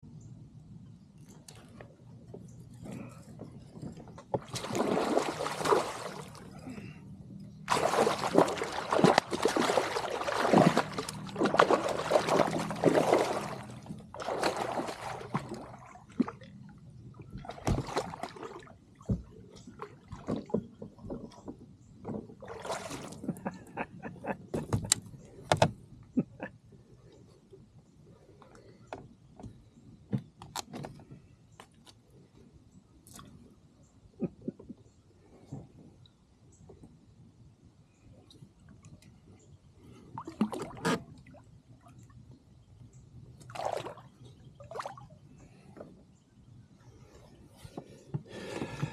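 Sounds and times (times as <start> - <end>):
low steady hum: 0.0 - 48.9
water splashing and sloshing: 1.2 - 26.0, 39.8 - 48.9.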